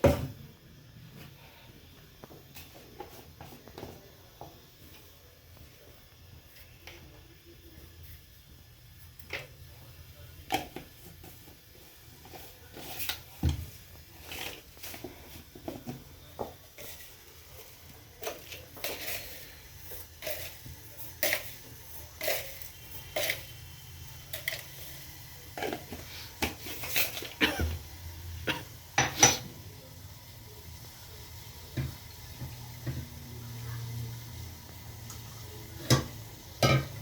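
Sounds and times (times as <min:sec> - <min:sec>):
dishes and utensils clinking: 0:28.5 - 0:29.5, 0:35.8 - 0:37.0.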